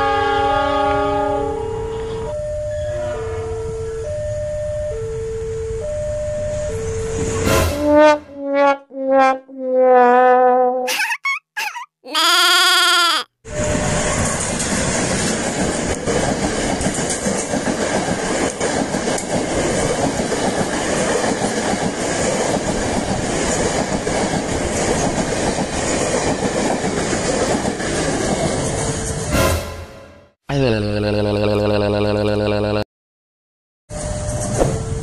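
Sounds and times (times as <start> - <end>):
train wheels rumbling on rails: 13.5 - 29.4.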